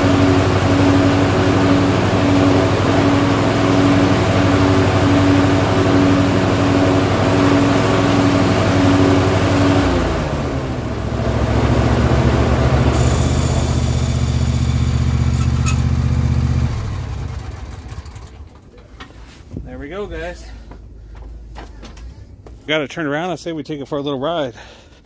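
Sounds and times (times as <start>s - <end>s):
lawn tractor engine running: 0.0s - 19.2s.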